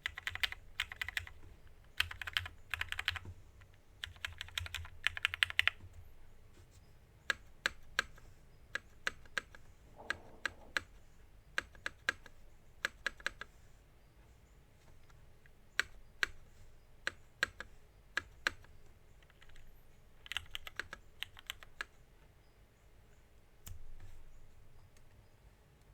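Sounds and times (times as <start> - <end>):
mechanical keyboard typing: 0.0 - 5.9, 7.3 - 10.9, 17.0 - 21.9.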